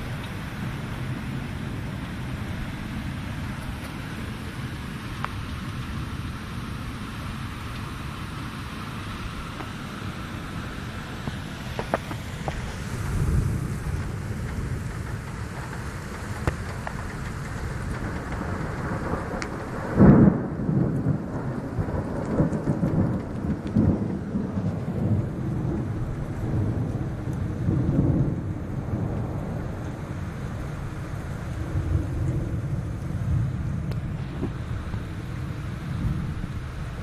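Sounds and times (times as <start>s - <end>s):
rain falling: 0.0s - 37.0s
thunder clap and rumbles: 11.2s - 37.0s.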